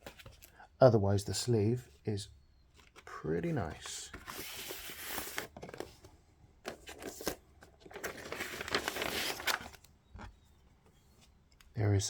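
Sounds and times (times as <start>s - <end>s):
paper and card rustling: 2.7s - 11.4s.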